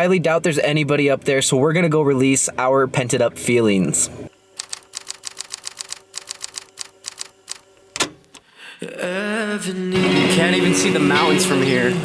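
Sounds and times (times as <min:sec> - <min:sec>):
person speaking: 0:09.9 - 0:12.0.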